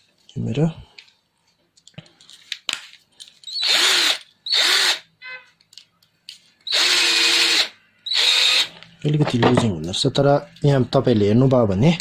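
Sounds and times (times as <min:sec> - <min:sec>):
cordless drill spinning up: 0:03.5 - 0:05.0, 0:06.7 - 0:08.7.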